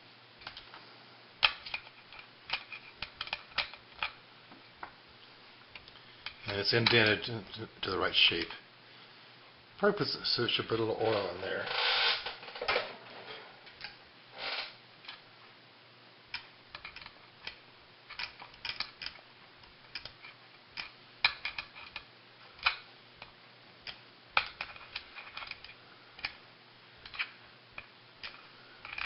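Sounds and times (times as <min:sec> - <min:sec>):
small metal parts clicking: 0:01.4 - 0:04.2, 0:16.3 - 0:19.2, 0:19.8 - 0:26.4, 0:27.0 - 0:29.0.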